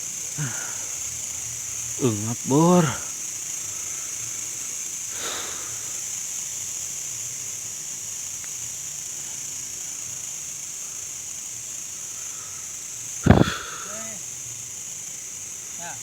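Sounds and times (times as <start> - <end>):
high-pitched hiss: 0.0 - 16.0
man breathing hard: 0.4 - 1.0, 5.1 - 6.0, 13.3 - 14.0.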